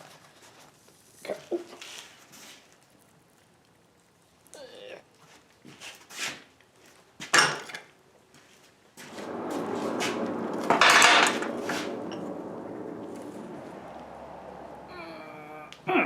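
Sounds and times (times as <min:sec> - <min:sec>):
steady rushing noise: 0:09.0 - 0:15.9.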